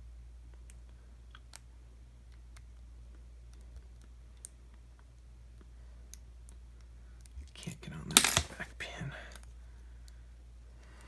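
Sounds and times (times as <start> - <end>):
lock pick clicking pins: 8.1 - 8.7.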